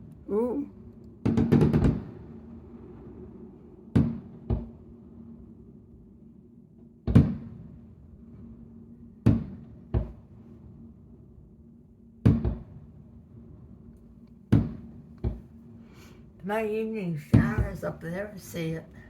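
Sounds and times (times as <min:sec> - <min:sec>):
fireworks booming: 0:01.2 - 0:03.4, 0:07.1 - 0:07.7, 0:12.2 - 0:12.8, 0:14.5 - 0:19.0
low steady hum: 0:07.6 - 0:19.0.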